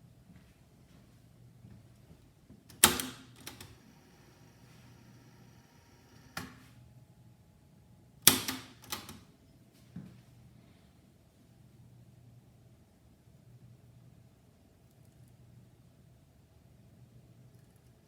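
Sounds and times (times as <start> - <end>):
faint motor whir: 1.7 - 7.2.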